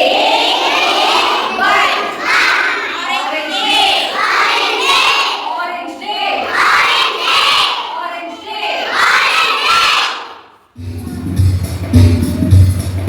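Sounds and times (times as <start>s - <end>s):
young children shouting: 0.0s - 10.5s.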